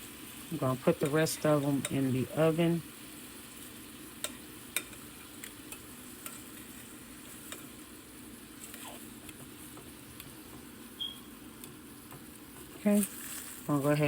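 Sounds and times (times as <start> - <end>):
chicken sizzling in a frying pan: 0.0 - 14.0.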